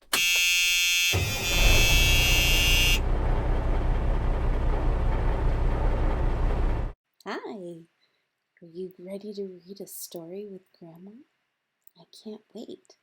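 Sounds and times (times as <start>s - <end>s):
vehicle horn: 0.1s - 3.1s
heavy engine rumble: 1.2s - 7.0s.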